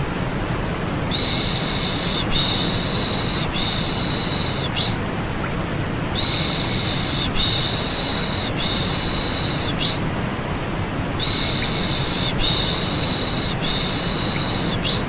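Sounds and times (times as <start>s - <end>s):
steady white noise: 0.0s - 15.0s.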